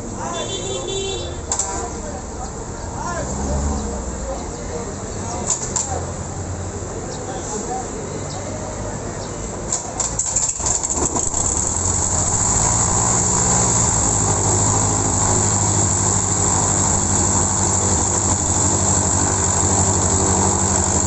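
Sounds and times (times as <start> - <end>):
aircraft engine idling: 13.9 - 21.0.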